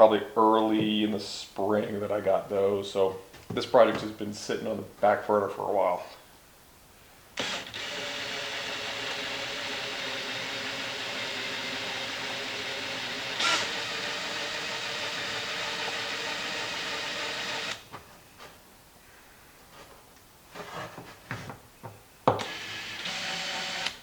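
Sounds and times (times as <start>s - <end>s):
power drill drilling: 7.4s - 17.8s, 22.4s - 24.0s.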